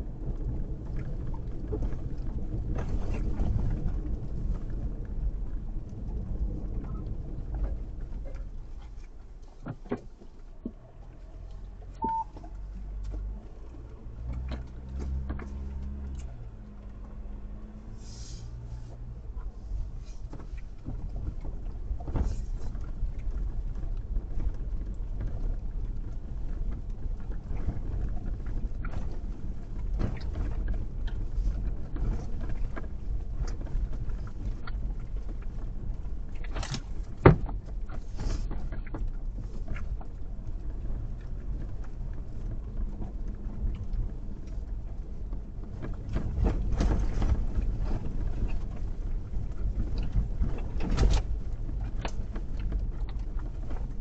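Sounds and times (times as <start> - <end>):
vehicle rumbling: 0.0 - 54.0
knocks and clatters: 20.2 - 54.0.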